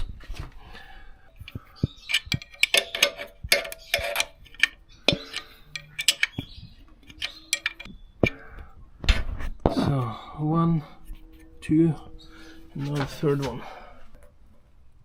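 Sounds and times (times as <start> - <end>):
ratchet wrench clicking: 2.0 - 6.5.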